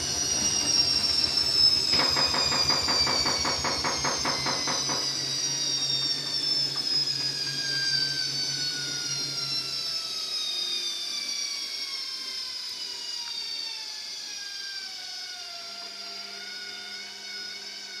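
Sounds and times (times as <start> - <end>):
washing machine spin winding down: 0.0 - 18.0.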